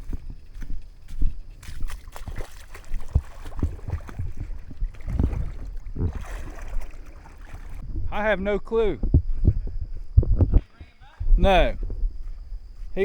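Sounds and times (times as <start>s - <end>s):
creek water sloshing and gurgling: 0.0s - 8.0s
soft low thumps: 2.9s - 13.0s.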